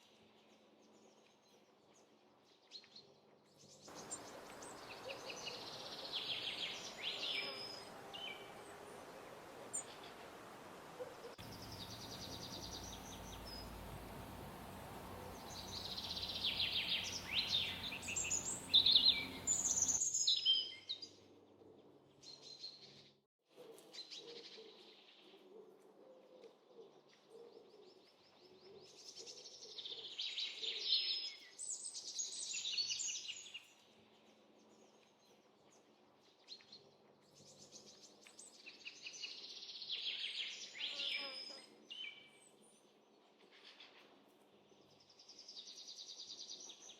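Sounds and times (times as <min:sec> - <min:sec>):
songbirds chirping and trilling: 0:00.0 - 0:23.2.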